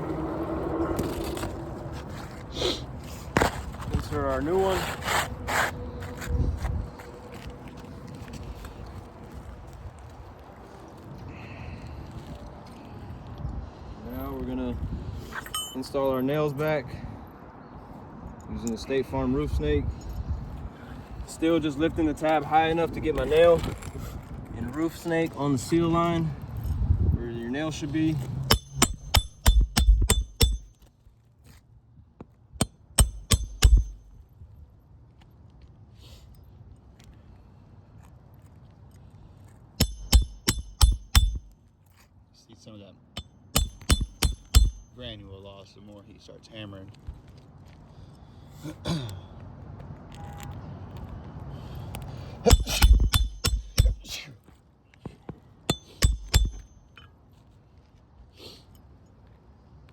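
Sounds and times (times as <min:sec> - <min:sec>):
hammer striking roofing nails: 0:28.5 - 0:30.8, 0:32.9 - 0:34.1, 0:39.8 - 0:41.5, 0:43.5 - 0:44.9, 0:52.4 - 0:54.1, 0:55.7 - 0:56.7.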